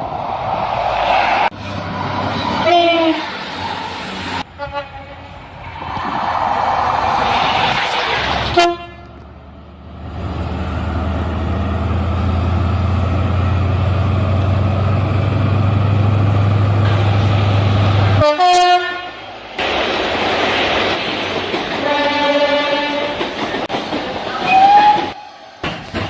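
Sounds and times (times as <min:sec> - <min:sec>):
loud rushing noise: 0:00.0 - 0:04.4, 0:05.7 - 0:08.6, 0:19.2 - 0:21.9
train horn blasts: 0:02.6 - 0:03.2, 0:04.5 - 0:05.4, 0:08.5 - 0:09.1, 0:18.2 - 0:19.2, 0:21.8 - 0:23.2.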